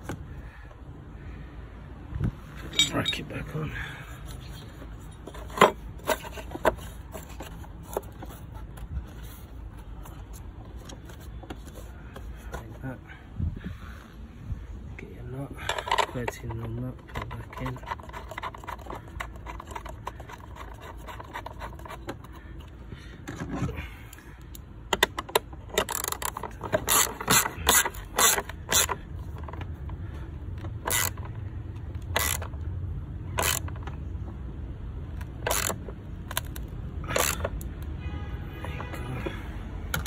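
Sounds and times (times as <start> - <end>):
faint scraping and fumbling: 2.2 - 14.0
socket ratchet clicking: 24.6 - 29.6, 30.6 - 32.7, 33.3 - 34.0, 35.1 - 37.9.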